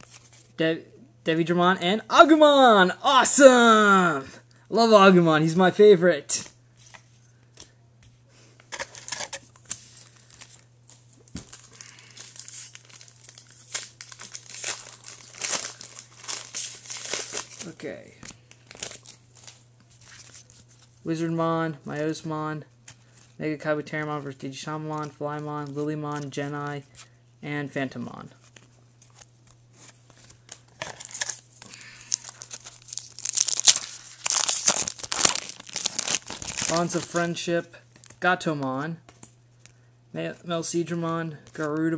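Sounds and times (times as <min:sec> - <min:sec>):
wrapper crinkling and tearing: 0:08.7 - 0:20.8, 0:30.1 - 0:37.3.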